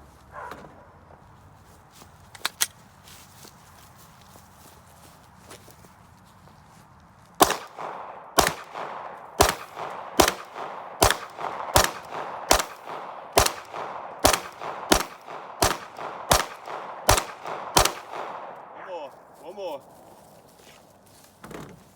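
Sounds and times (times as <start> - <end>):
pistol shots: 7.4 - 18.9.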